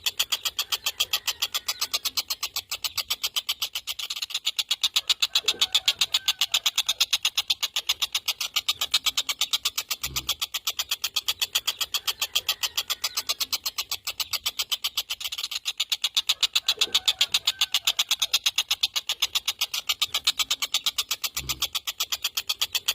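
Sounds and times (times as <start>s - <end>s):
kingfisher rattling chatter: 0.0s - 22.9s.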